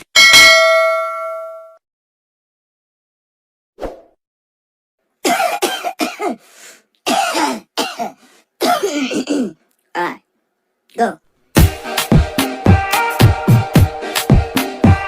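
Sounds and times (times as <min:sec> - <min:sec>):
high sped-up coughing: 0:05.2 - 0:09.6.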